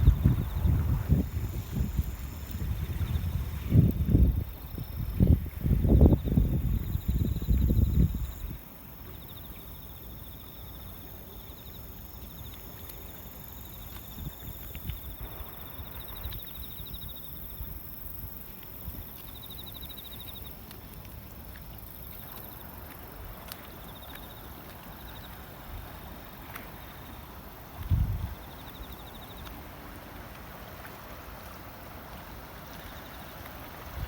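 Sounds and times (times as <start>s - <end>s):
low wind rumble: 0.0s - 8.6s, 27.5s - 29.8s
wind buffeting microphone: 0.0s - 8.6s, 27.7s - 29.4s.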